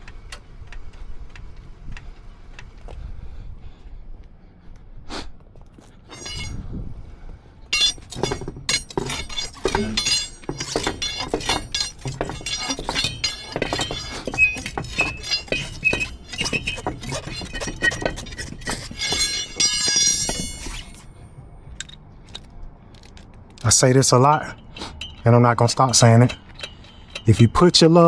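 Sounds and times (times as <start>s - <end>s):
metal clinking of lug nuts: 6.1s - 6.6s, 7.7s - 21.1s, 21.8s - 28.0s.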